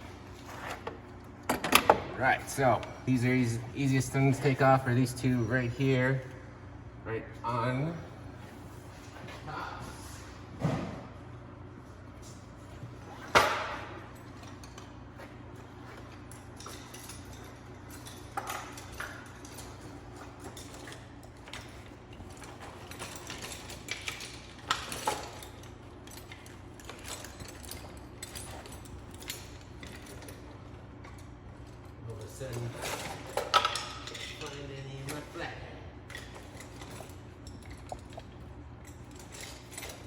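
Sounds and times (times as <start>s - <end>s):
hand tools clinking on metal: 15.8s - 35.4s, 38.8s - 40.0s.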